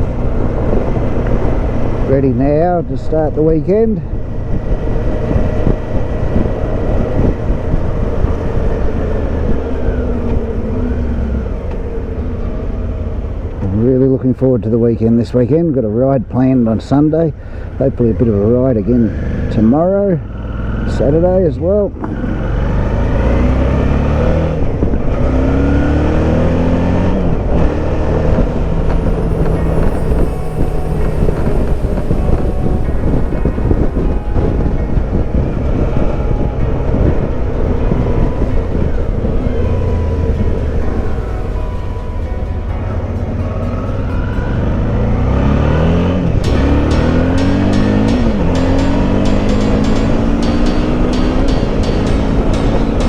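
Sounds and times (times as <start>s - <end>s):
wind and road noise: 0.0s - 53.0s
motorcycle engine rumbling: 23.8s - 53.0s.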